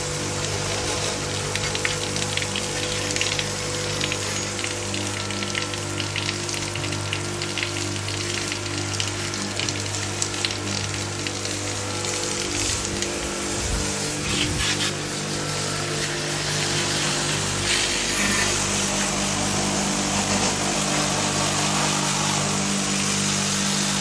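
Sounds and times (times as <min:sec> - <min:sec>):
water spraying and spattering: 0:00.0 - 0:24.0.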